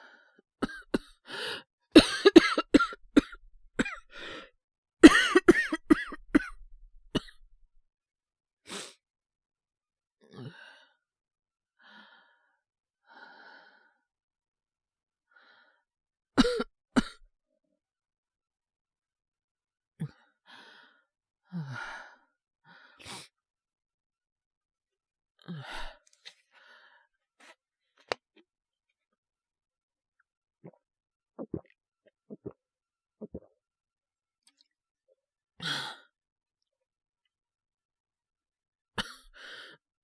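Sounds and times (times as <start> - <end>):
man coughing harshly: 2.0 - 4.0, 5.0 - 6.6, 16.4 - 17.2.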